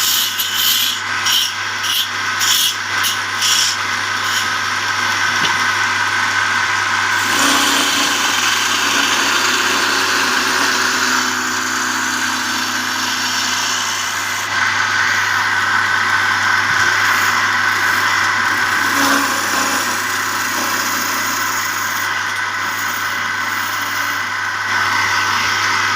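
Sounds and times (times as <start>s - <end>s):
wood being worked: 0.0s - 25.9s
woodworking machine motor hum: 0.0s - 25.9s.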